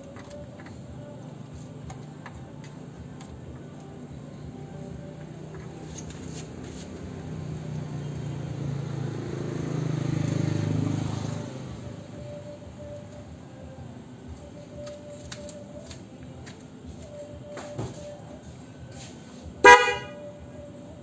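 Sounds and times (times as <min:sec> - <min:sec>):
vehicle engine passing by: 0:05.0 - 0:12.9.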